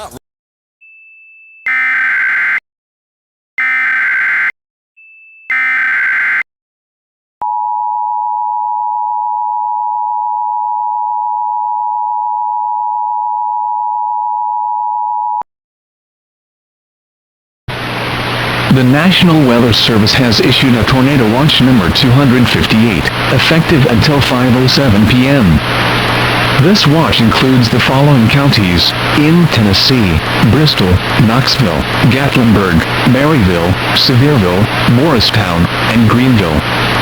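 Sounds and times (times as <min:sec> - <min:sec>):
data burst tones: 0:01.7 - 0:02.6, 0:03.6 - 0:04.5, 0:05.5 - 0:06.4
two-tone attention signal: 0:01.7 - 0:02.6, 0:03.6 - 0:04.5, 0:05.5 - 0:06.4.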